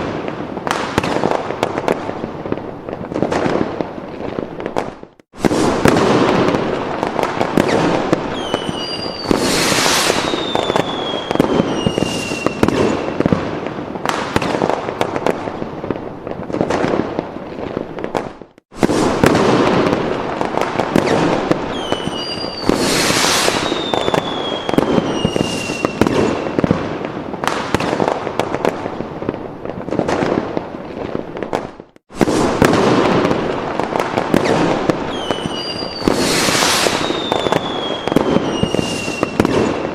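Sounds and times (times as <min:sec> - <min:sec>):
fireworks crackling bangs: 0:00.0 - 0:39.9
rockets whistling: 0:07.1 - 0:13.4, 0:20.5 - 0:26.7, 0:34.3 - 0:39.9.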